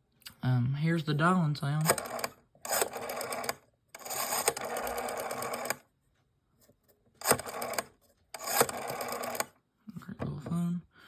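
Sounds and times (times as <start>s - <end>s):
rotary telephone dial whirring clicks: 1.8s - 5.8s, 7.2s - 9.6s.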